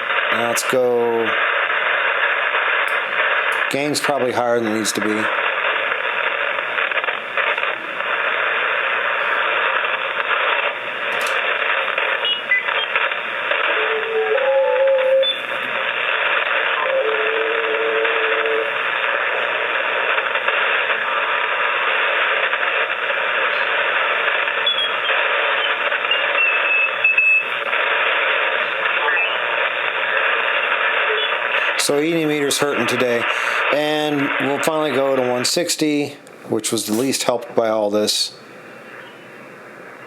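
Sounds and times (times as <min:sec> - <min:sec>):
radio static hiss: 0:00.0 - 0:40.0
whistling radio tones: 0:11.4 - 0:22.8, 0:23.4 - 0:35.4, 0:38.3 - 0:40.0.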